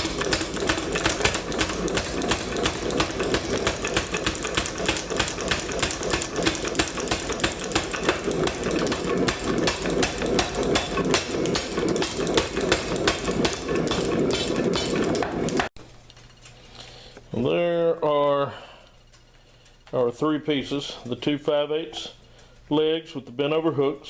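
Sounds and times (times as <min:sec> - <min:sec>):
motor running: 0:00.0 - 0:15.7
power hammer striking hot steel: 0:00.0 - 0:15.7.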